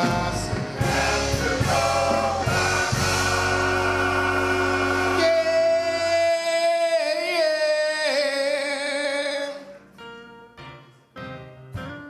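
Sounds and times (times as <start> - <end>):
gospel choir and band chord: 0.0 - 8.6.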